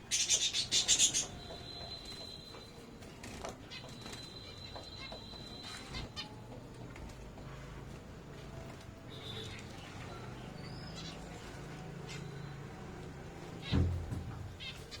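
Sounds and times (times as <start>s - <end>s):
finches calling: 0.0s - 2.6s.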